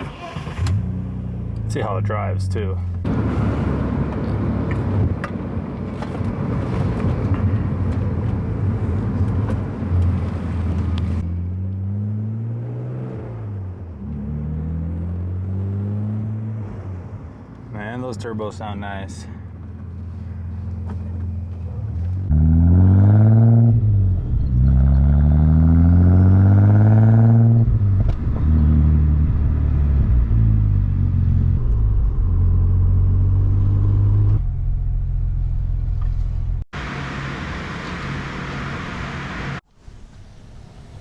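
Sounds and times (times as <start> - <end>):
turbocharged car engine accelerating: 0.0 - 17.2, 20.6 - 39.6.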